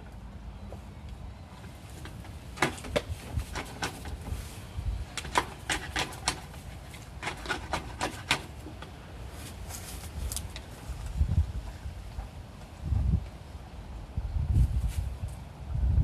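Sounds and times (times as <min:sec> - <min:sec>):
cable scraping and clicking in pipe: 0:05.1 - 0:08.9.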